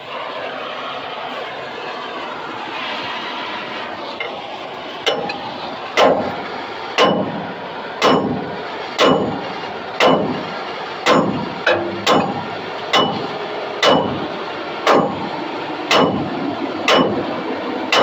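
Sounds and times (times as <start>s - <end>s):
steady background rumble: 3.4s - 18.0s
hammer blows on steel: 7.0s - 10.5s, 11.1s - 15.3s, 15.9s - 17.3s.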